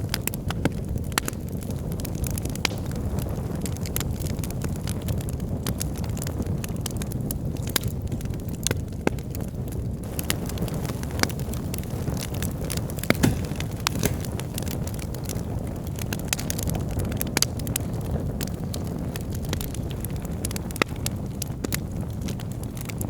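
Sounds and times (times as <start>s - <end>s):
logs crackling: 10.0s - 16.8s
loud fire pops: 10.0s - 22.4s.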